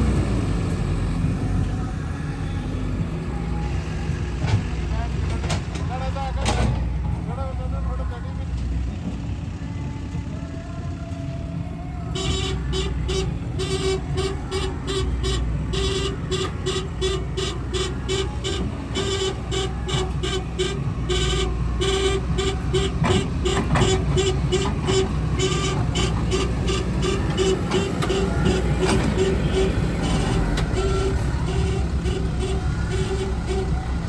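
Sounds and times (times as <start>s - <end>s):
heavy diesel engine running: 0.0s - 34.0s
rapid reversing beeps: 12.3s - 34.0s.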